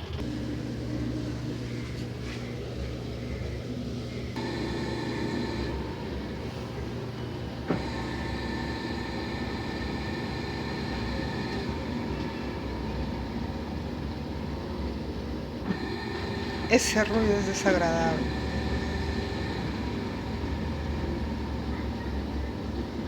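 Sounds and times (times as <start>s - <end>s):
washing machine whine and rumble: 0.0s - 23.0s.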